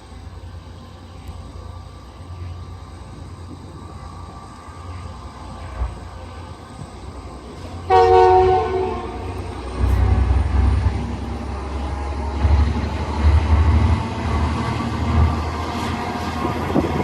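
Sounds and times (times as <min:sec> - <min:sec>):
diesel locomotives rumbling: 0:00.0 - 0:17.0
multi-tone air horn blast: 0:07.9 - 0:09.4.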